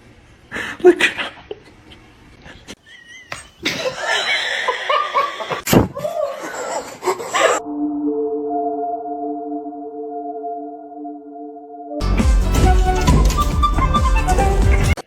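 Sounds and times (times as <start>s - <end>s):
person laughing: 0.6s - 1.7s, 2.5s - 7.6s
steady music tones: 7.6s - 15.0s.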